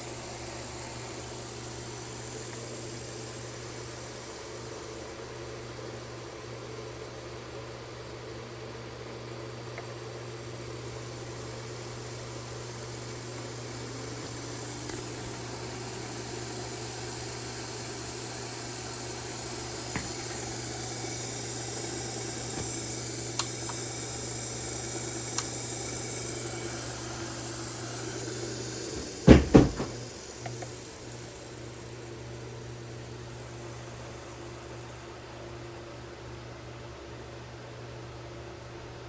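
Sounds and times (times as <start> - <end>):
electric motor humming and whining: 0.0 - 7.0, 9.1 - 35.0
loud knocks: 29.0 - 30.1.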